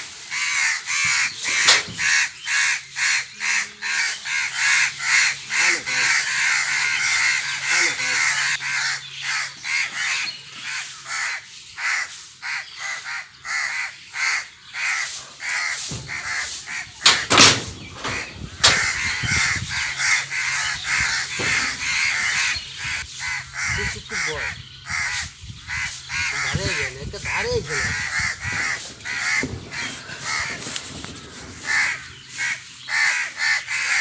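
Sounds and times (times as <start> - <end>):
crows cawing: 0.0 - 34.0
sharp loud knocks: 17.0 - 19.1, 21.3 - 21.8, 28.5 - 29.9.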